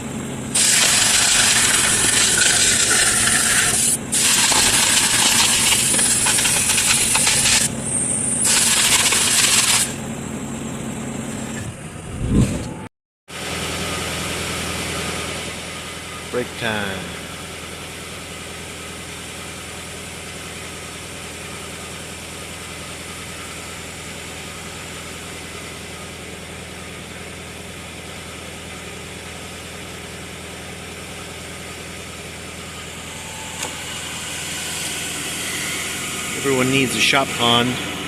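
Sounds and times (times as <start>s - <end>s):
motor droning steadily: 13.4s - 38.0s.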